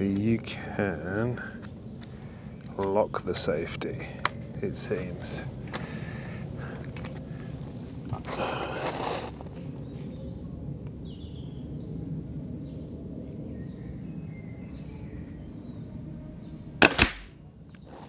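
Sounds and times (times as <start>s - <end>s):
faint birdsong chirps: 0.0s - 16.8s, 17.4s - 18.0s
air rifle firing crack: 16.8s - 17.4s.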